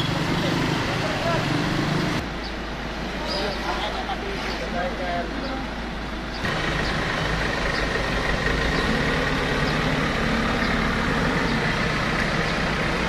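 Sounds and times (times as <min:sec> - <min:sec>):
engine idling: 0:04.7 - 0:13.0.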